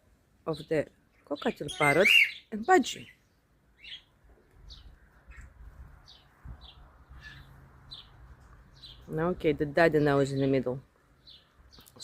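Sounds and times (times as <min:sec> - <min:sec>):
parrot chirps: 0:01.6 - 0:02.5.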